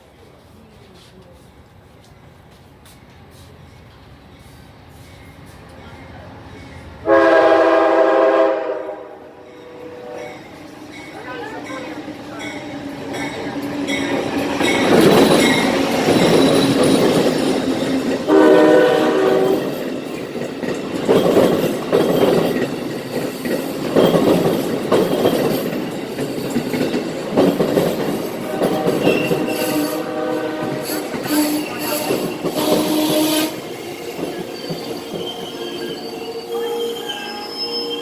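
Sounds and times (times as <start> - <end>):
train horn blasts: 7.0 - 10.5, 18.3 - 19.8, 28.2 - 33.8
train wheels clattering on rails: 9.5 - 36.6.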